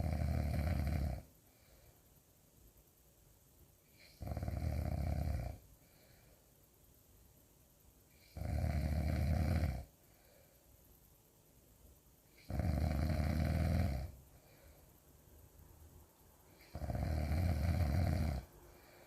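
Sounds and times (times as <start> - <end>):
loud snoring: 0.0 - 1.3, 4.0 - 5.6, 8.2 - 9.9, 12.4 - 14.2, 16.6 - 18.5.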